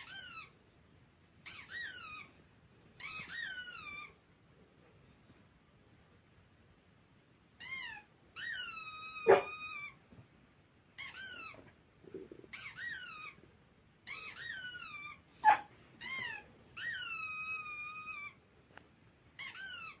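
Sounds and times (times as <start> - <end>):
high-pitched squeaks: 1.4 - 4.2, 7.6 - 10.0, 14.1 - 18.4.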